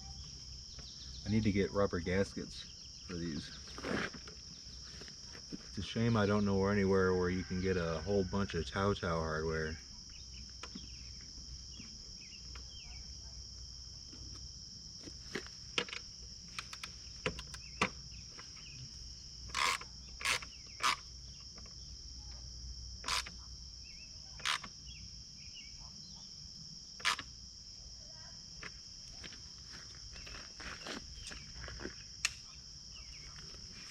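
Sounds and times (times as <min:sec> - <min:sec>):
crickets chirping: 0:00.0 - 0:33.9
light clicks and knocks: 0:15.0 - 0:18.0.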